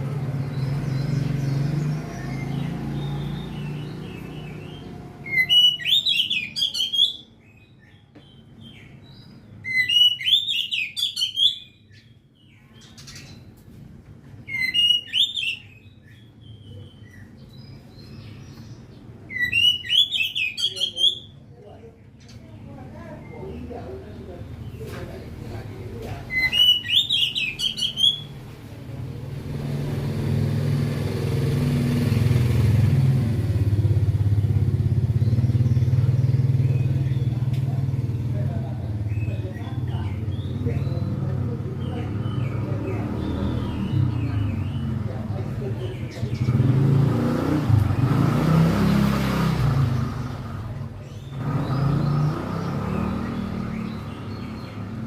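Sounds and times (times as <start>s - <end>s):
motor vehicle engine running: 0.0s - 5.8s, 28.1s - 55.0s.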